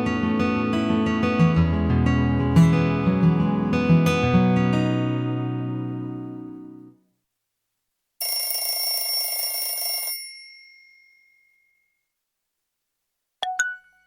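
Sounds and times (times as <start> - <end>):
telephone bell ringtone: 8.2 - 12.0.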